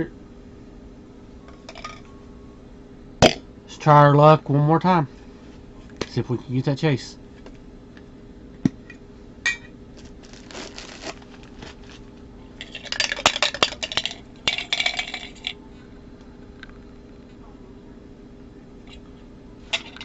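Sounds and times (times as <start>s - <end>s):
metallic clinking and rustling: 12.6s - 15.6s.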